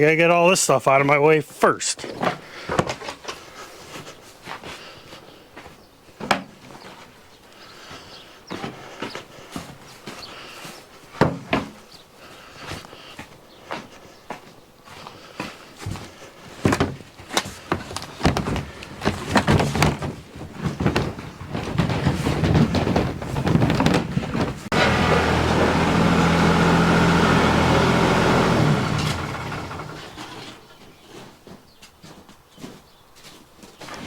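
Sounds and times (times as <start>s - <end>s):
wooden pallets knocking and clattering: 2.0s - 3.4s, 6.2s - 7.2s, 11.1s - 11.9s, 15.8s - 32.8s.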